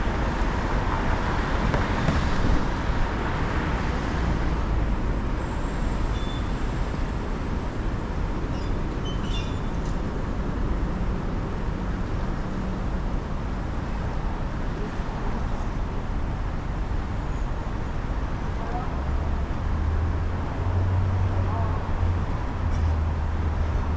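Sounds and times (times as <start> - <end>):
car driving on wet streets: 0.0 - 8.4.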